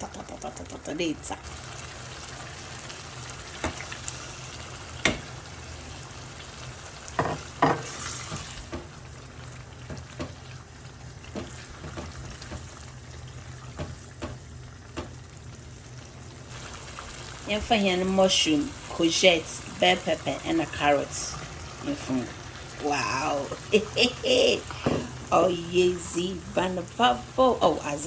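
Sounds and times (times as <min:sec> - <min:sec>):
food sizzling in a pot: 0:00.0 - 0:28.0
spoon knocking against pot: 0:07.2 - 0:07.9.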